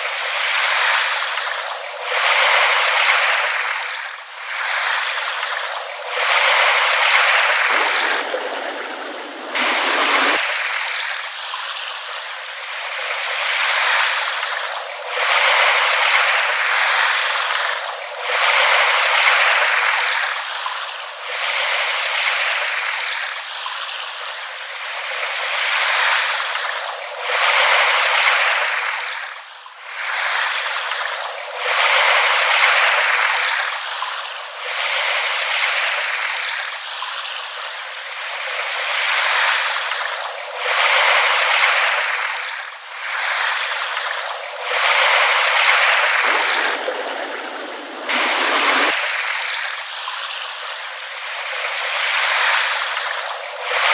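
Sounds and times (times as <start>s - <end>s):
small waves lapping on shore: 0.0s - 53.9s.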